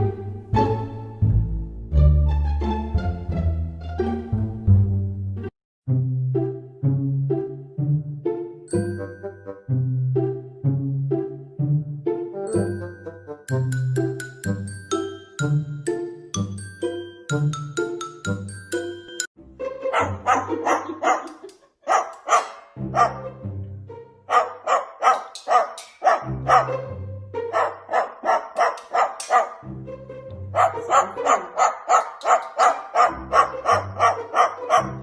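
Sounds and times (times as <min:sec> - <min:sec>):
rapid bark-like yaps: 0:19.9 - 0:23.3, 0:24.3 - 0:26.8, 0:27.5 - 0:29.6, 0:30.6 - 0:35.0.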